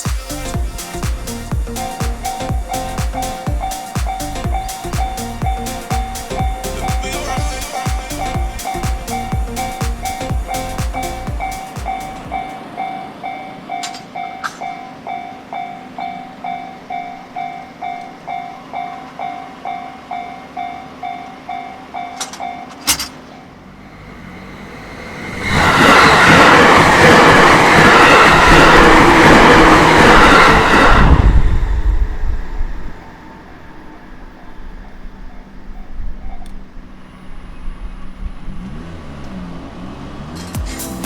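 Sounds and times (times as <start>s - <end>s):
level-crossing warning bell: 0.0s - 31.0s
train wheels rumbling on rail: 0.6s - 12.6s, 23.9s - 34.1s.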